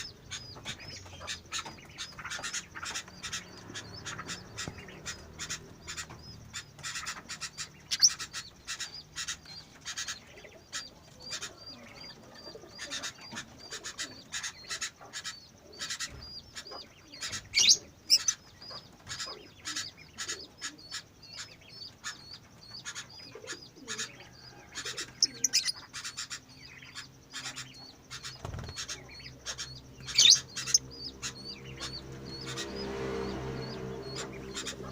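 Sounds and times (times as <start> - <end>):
bird flapping wings: 28.4 - 28.9.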